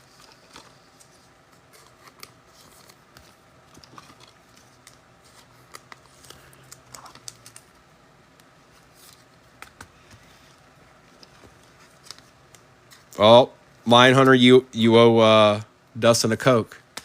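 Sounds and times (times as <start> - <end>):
cards rustling: 0.0 - 13.2.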